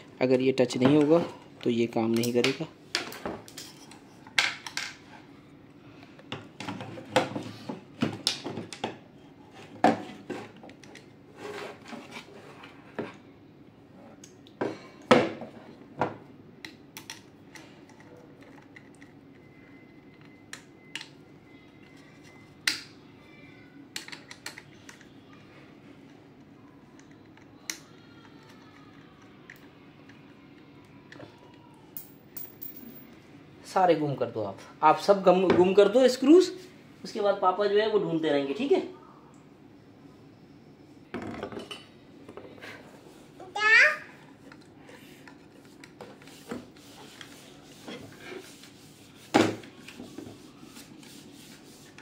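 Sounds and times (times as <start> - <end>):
metal parts and tools clinking: 32.0 - 33.1.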